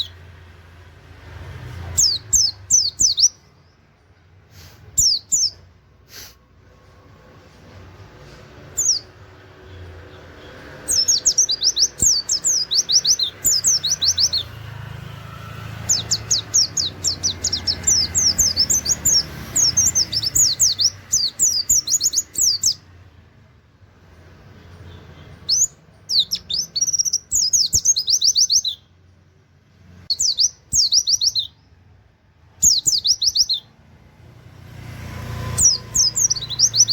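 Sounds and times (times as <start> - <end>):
bird singing high whistled notes: 1.9 - 3.5, 5.0 - 5.6, 8.7 - 9.2, 10.8 - 22.8, 25.4 - 28.9, 30.1 - 31.7, 32.6 - 33.8, 35.4 - 36.9.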